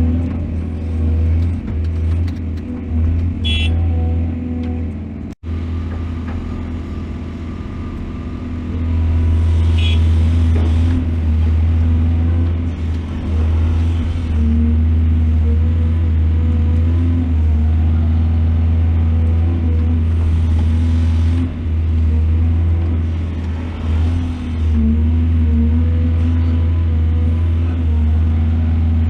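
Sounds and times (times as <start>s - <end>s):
diesel engine droning: 0.0s - 29.0s.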